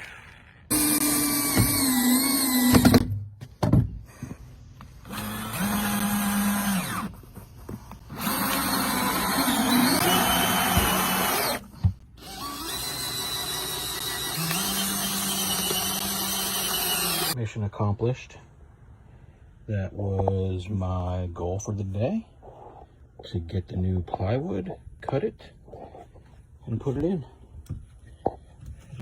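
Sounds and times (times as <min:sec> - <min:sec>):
power drill running: 0:00.7 - 0:03.0, 0:05.0 - 0:07.2, 0:08.0 - 0:17.4.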